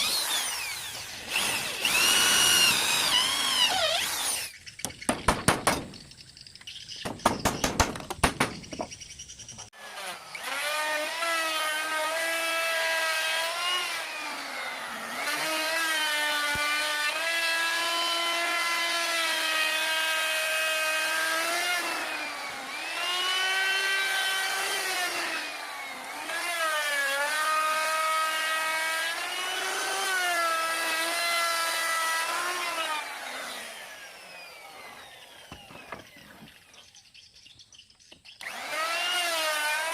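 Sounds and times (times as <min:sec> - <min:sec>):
table saw cutting wood: 0:00.0 - 0:05.0, 0:09.6 - 0:36.9, 0:38.3 - 0:39.9
sharp knocks: 0:04.8 - 0:06.0, 0:07.0 - 0:09.0.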